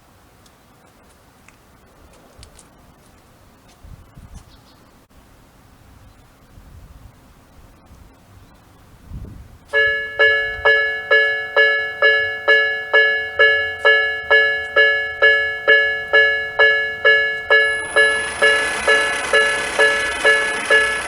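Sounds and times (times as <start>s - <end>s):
level crossing warning bell: 9.7s - 21.0s.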